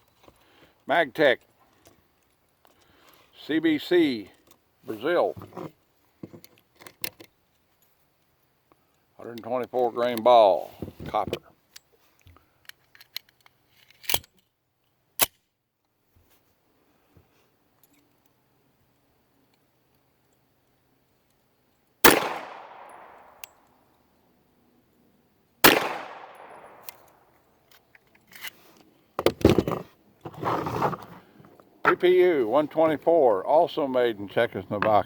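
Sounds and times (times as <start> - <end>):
pistol shots echoing: 22.0 - 23.5, 25.6 - 27.2.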